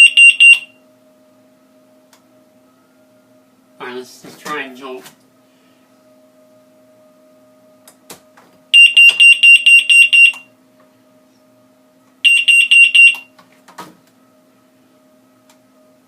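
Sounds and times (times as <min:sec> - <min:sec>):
pulsed electronic alarm beep: 0:00.0 - 0:00.8, 0:08.8 - 0:10.5, 0:12.2 - 0:13.3.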